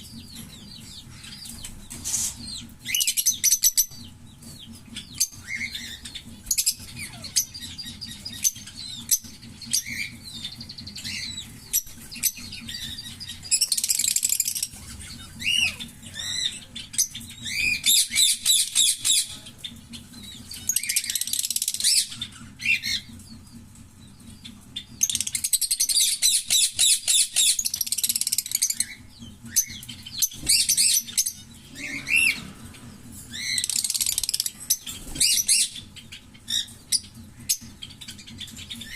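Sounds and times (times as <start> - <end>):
lovebirds chirping and chattering: 0.0 - 38.9.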